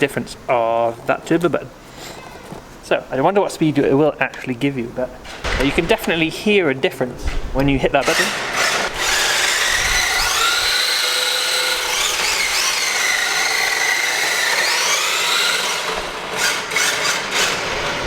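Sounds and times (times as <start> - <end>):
toy car electric motor whining: 8.0 - 18.0.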